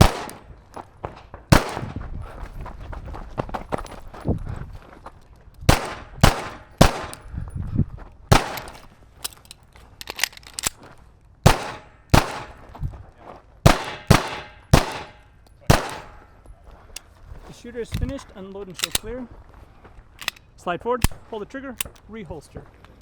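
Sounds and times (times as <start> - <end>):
pistol shots: 0.0 - 0.5, 1.5 - 2.0, 5.7 - 7.2, 8.3 - 8.9, 11.4 - 12.7, 13.6 - 16.2.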